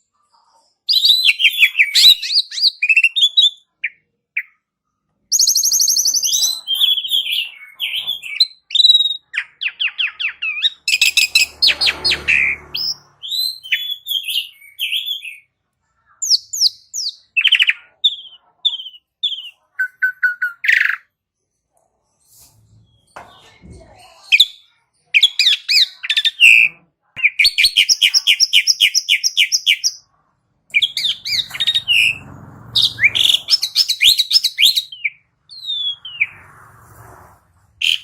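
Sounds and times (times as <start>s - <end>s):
starling singing: 0.9s - 4.6s, 5.3s - 15.5s, 16.2s - 21.1s, 25.2s - 30.1s, 30.7s - 36.5s
harsh rasping bird call: 6.2s - 15.5s, 30.7s - 36.6s, 37.8s - 38.0s.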